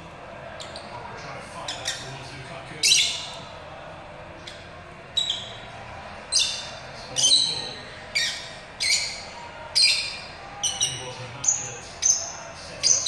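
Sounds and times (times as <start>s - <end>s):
bird chirping high-pitched: 1.6s - 2.1s, 2.8s - 3.4s, 5.2s - 5.6s, 6.3s - 13.0s.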